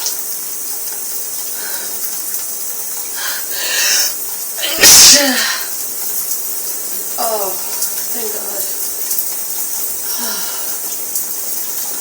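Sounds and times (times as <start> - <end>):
shower water spraying: 0.0 - 12.0
person sneezing: 3.6 - 5.7.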